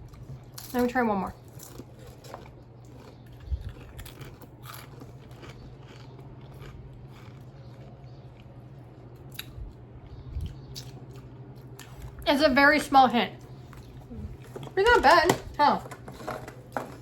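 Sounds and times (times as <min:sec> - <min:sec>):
person crunching crisps: 0:01.4 - 0:09.9.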